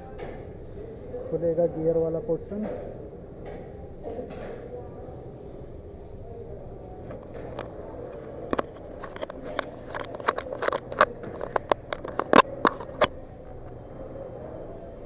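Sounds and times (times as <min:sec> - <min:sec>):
steady background hum: 0:00.0 - 0:15.0
hand tools clicking and tapping: 0:08.5 - 0:13.1.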